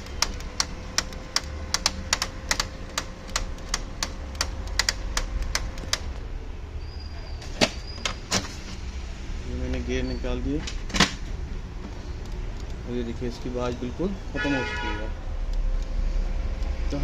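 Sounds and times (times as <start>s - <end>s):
rapid gear clicking: 0.0s - 6.1s
printer motor hum: 0.0s - 6.3s.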